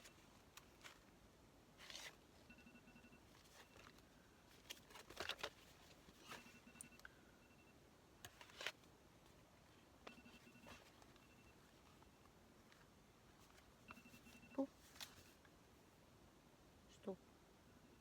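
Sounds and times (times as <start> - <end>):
faint electronic tone pattern: 2.4 - 3.9, 6.2 - 7.8, 10.1 - 12.3, 13.9 - 14.8.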